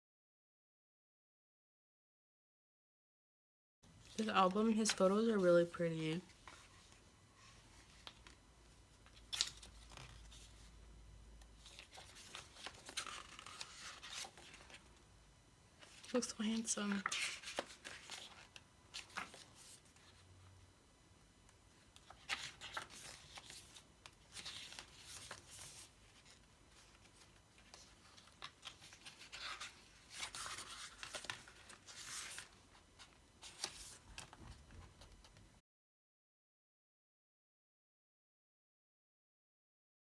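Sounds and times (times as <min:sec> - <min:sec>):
paper pages rustling: 0:04.0 - 0:10.8, 0:11.6 - 0:15.0, 0:15.8 - 0:20.3, 0:21.8 - 0:35.4.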